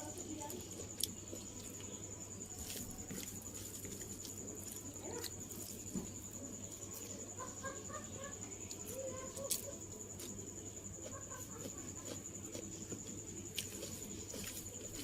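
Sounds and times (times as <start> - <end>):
person chewing: 2.6 - 5.8, 11.0 - 15.0
sharp crunches: 11.0 - 15.0.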